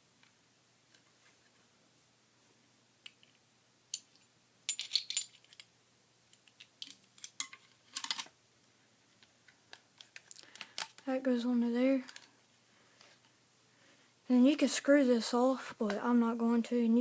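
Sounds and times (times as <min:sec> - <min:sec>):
metal gun parts clicking and rattling: 0:03.9 - 0:05.7, 0:06.4 - 0:08.3.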